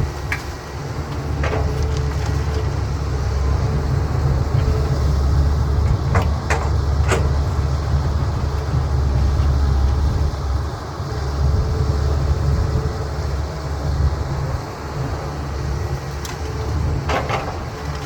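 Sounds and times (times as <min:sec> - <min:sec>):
excavator diesel engine rumbling: 0:00.0 - 0:18.0.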